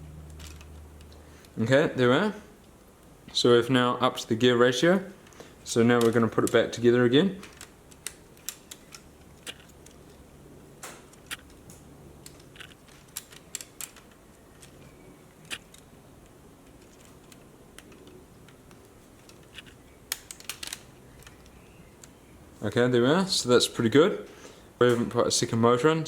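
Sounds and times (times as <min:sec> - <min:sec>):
plastic parts clicking: 0:05.2 - 0:22.2.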